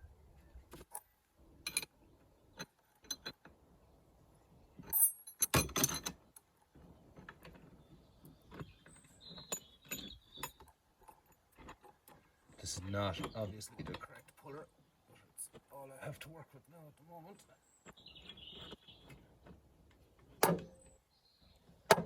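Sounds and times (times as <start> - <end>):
metal tools clinking: 2.6 - 3.5, 4.8 - 6.2, 9.4 - 12.2.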